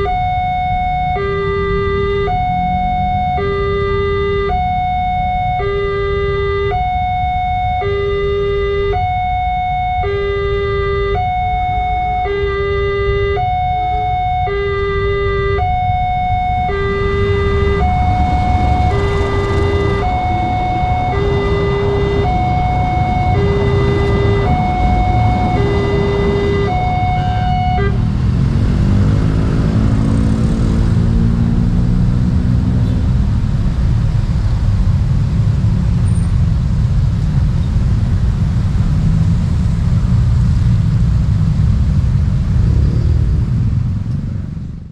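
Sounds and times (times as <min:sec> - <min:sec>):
engine note falling in pitch: 0:00.0 - 0:32.0
two-tone level crossing siren: 0:00.0 - 0:32.2
loud low rumble: 0:15.8 - 0:44.9.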